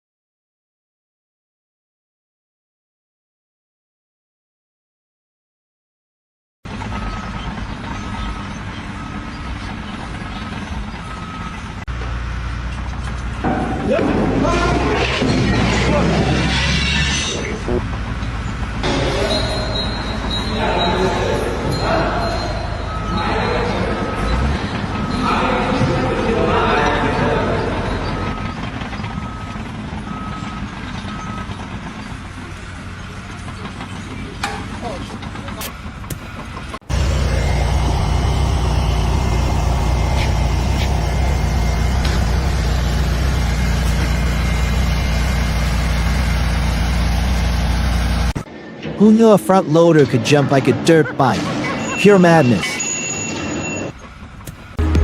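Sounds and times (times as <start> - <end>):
heavy vehicle engine rumbling: 6.7 - 55.0
reversing alarm beeps: 6.9 - 11.8, 18.9 - 26.1, 27.1 - 31.7, 35.6 - 45.7, 51.4 - 54.0
engine running: 27.3 - 48.5, 53.9 - 55.0.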